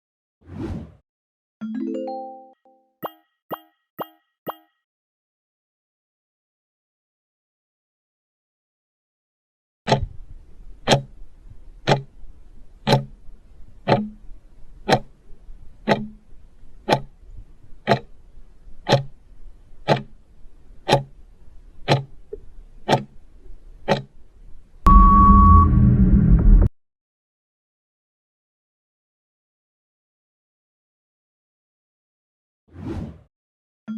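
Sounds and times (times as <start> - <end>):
countdown timer ticking: 1.6 - 4.8, 9.9 - 10.1, 10.9 - 11.2, 11.8 - 12.1, 12.8 - 13.2, 13.8 - 14.3, 14.9 - 15.1, 15.8 - 16.3, 16.9 - 17.1, 17.8 - 18.1, 18.9 - 19.2, 19.9 - 20.2, 20.9 - 21.1, 21.9 - 22.1, 22.9 - 23.1, 23.9 - 24.1.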